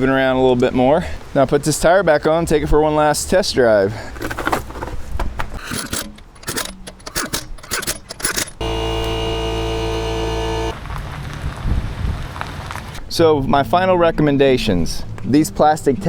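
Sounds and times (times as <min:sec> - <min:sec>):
metal tools clinking and rattling: 0:05.6 - 0:08.6
power tool running: 0:08.6 - 0:10.9, 0:12.5 - 0:13.0.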